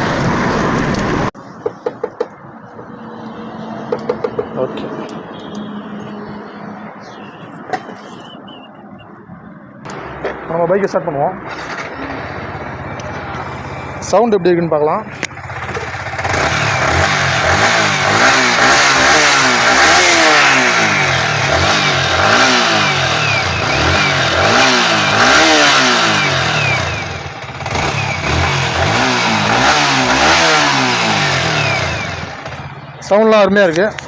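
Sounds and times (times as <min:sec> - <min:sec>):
motorcycle engine revving: 0:09.8 - 0:32.9.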